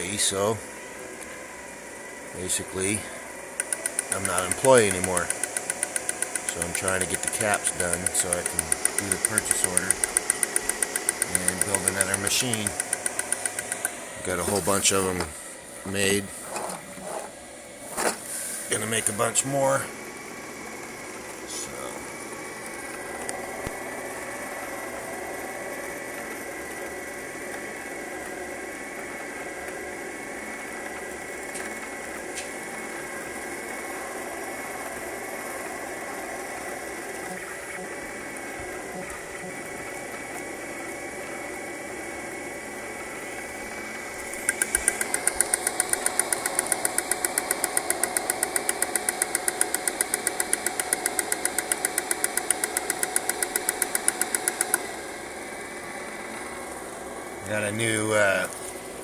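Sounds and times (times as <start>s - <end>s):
thin steady whine: 0.0s - 59.0s
three d printer hum: 0.0s - 59.0s
fast even ticking: 3.6s - 13.9s, 44.4s - 54.8s.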